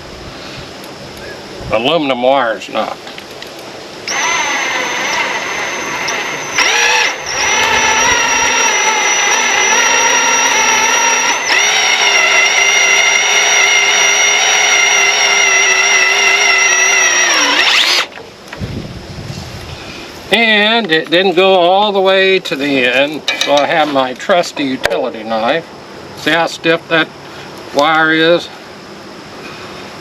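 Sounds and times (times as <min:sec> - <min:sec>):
electric drill motor whining: 0:04.0 - 0:18.2.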